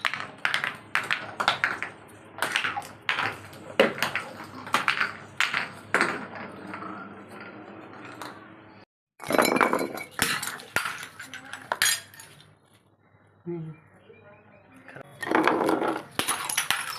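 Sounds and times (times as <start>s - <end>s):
glass bottles breaking: 9.2s - 12.4s, 15.2s - 16.9s.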